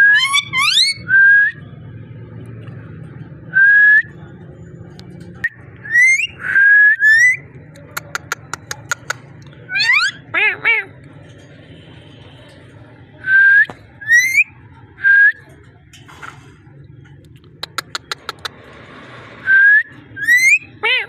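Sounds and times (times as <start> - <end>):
parrot whistled calls: 0.0 - 1.6, 5.8 - 7.4, 9.7 - 10.2, 13.3 - 14.5, 19.5 - 20.7.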